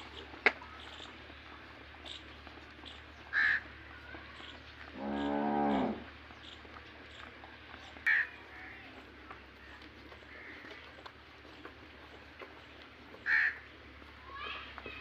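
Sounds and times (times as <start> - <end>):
crow cawing: 3.3 - 3.7, 8.1 - 8.4, 13.2 - 13.6
cow mooing: 5.0 - 6.1.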